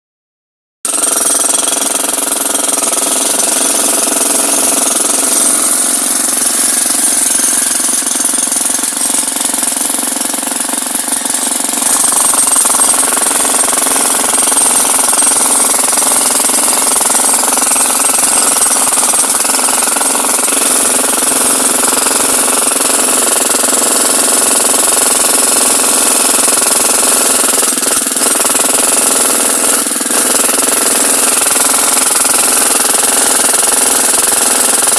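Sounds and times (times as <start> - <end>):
hydraulic breaker hammer: 0.9 - 34.9.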